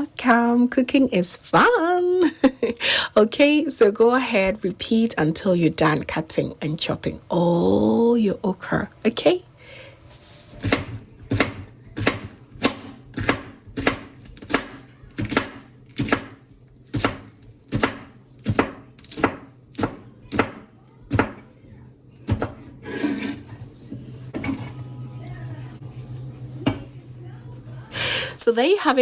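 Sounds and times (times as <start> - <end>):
knife scrape: 10.1 - 10.7, 22.8 - 23.6
knife chopping on cutting board: 10.5 - 21.4, 22.3 - 23.4.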